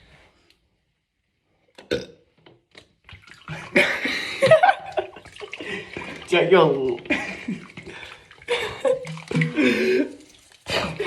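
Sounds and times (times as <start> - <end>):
long rough burp: 1.8 - 2.3.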